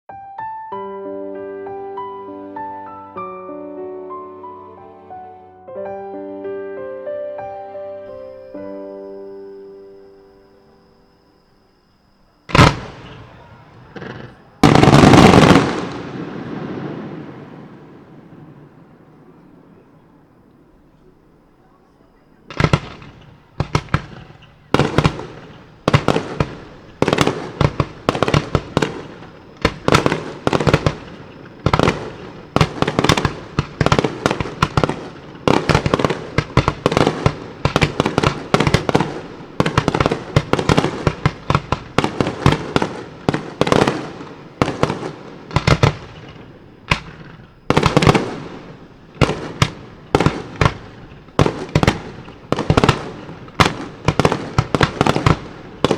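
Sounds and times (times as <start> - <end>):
firework shells bursting: 12.3 - 21.5, 22.2 - 55.9.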